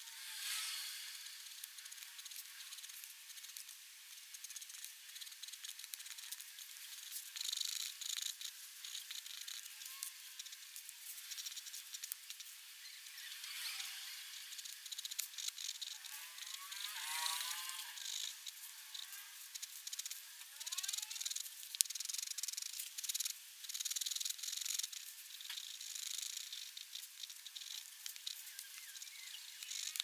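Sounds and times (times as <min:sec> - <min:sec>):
squeaky nib glides: 0:11.3 - 0:22.6.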